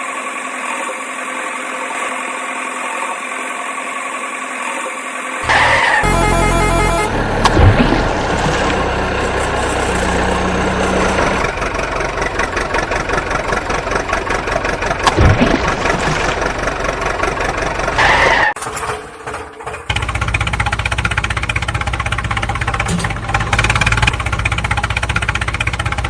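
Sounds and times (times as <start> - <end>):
vehicle engine idling: 5.4 - 18.0, 19.9 - 26.0.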